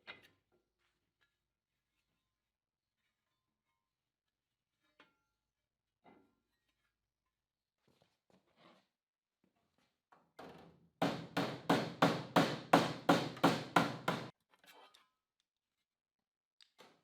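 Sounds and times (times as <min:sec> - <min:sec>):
hand tool striking sheet metal: 0:11.0 - 0:14.3.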